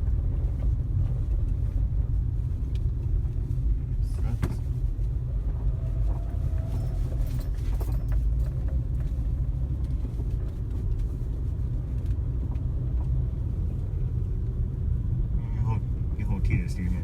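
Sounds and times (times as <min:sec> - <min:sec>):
car engine and road noise: 0:00.0 - 0:17.0.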